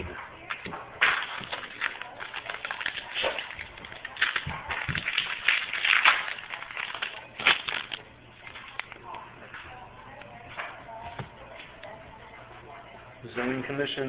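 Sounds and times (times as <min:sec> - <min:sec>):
card wrappers rustling and crinkling: 0:00.4 - 0:10.4.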